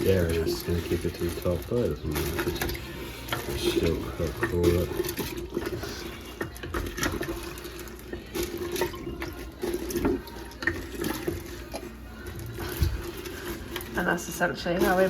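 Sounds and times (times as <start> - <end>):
liquid splashing in a jug: 0.0 - 14.1.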